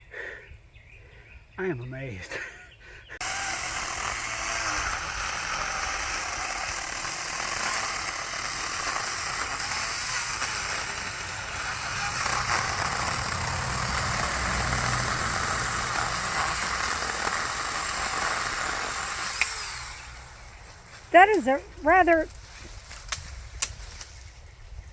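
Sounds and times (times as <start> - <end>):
mini chainsaw cutting wood: 3.2 - 20.6.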